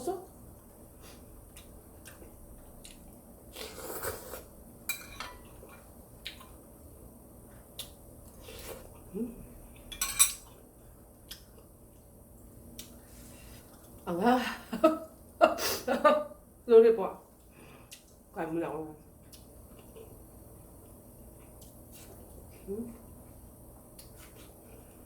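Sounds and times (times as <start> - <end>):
utensils clinking on dishes: 4.9 - 5.5, 9.9 - 10.6.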